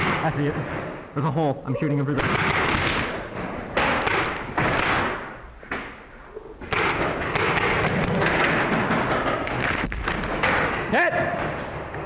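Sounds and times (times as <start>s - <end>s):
paintball marker shots: 2.2s - 3.2s, 6.7s - 8.6s.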